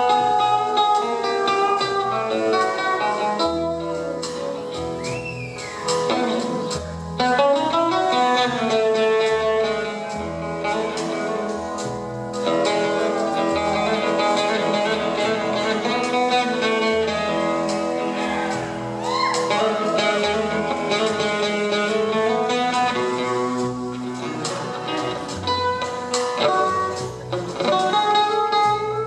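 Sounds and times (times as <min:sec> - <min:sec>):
bass line: 0:00.0 - 0:29.0
plucked guitar: 0:00.0 - 0:29.0
sliding melody line: 0:05.5 - 0:28.2.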